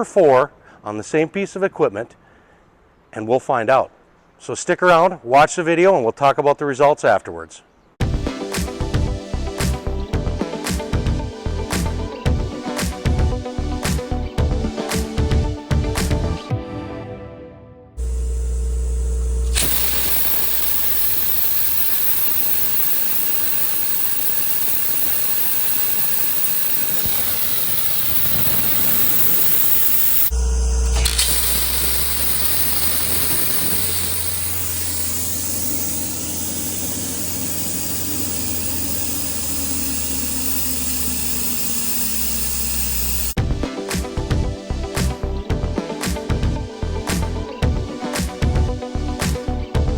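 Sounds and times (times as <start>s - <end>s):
abrasive blast nozzle hissing: 18.0s - 43.4s.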